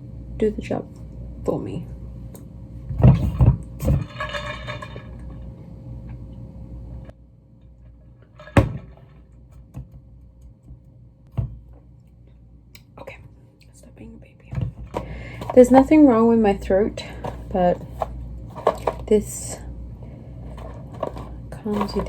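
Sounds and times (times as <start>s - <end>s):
faint steady hum: 0.0s - 22.0s
objects knocking: 8.4s - 10.0s, 14.5s - 15.8s, 17.1s - 19.1s, 20.5s - 22.0s.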